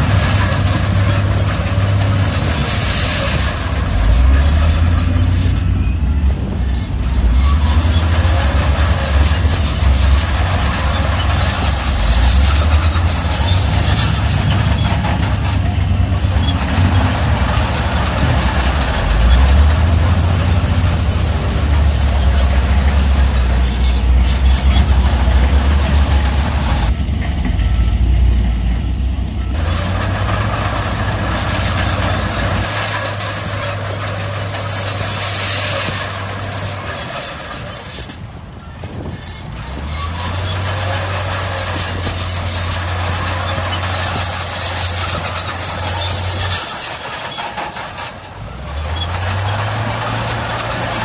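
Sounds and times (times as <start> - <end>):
clattering machinery: 0.0 - 51.0
diesel machinery engine rumble: 0.0 - 51.0.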